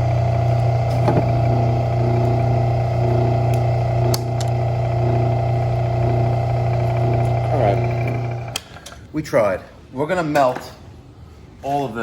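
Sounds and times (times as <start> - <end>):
machine motor humming: 0.0 - 8.7.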